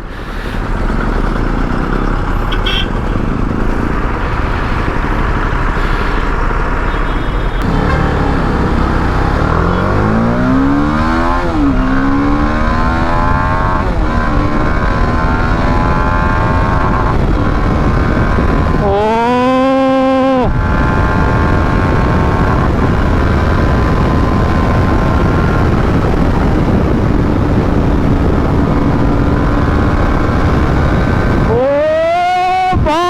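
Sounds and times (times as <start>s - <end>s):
heavy wind rush: 0.0s - 33.0s
motorcycle engine revving: 0.0s - 33.0s.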